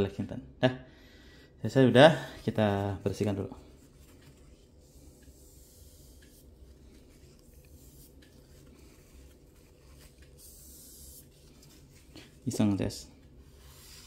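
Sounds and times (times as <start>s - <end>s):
low steady hum: 0.0s - 14.0s
cloth wiping knife: 3.7s - 12.6s, 13.4s - 14.0s.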